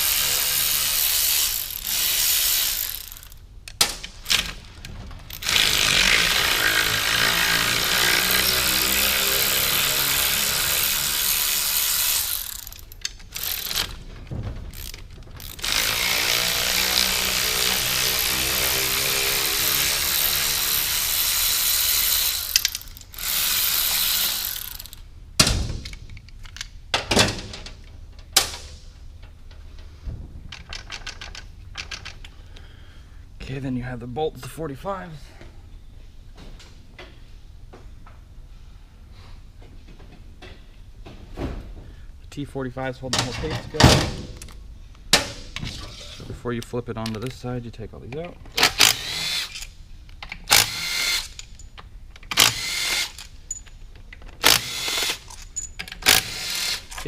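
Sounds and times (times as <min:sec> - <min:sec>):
power tool running: 0:05.3 - 0:13.8, 0:14.8 - 0:25.0, 0:50.5 - 0:51.4, 0:52.3 - 0:53.2, 0:56.0 - 0:57.0
sharp clicks and knocks: 0:25.4 - 0:32.4.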